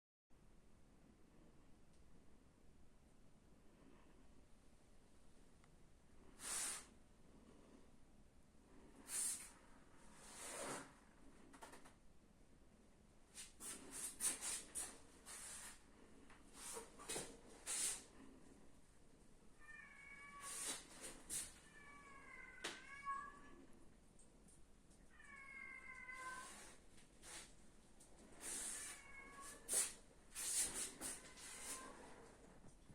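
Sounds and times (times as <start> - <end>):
cat meowing: 19.6 - 20.8, 21.6 - 23.6, 25.1 - 26.7, 28.5 - 29.8.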